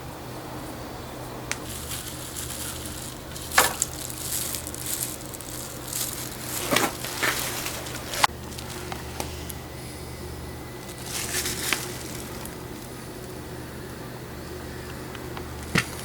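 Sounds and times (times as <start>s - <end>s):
rustling handling noises: 1.5s - 10.0s, 10.7s - 12.9s.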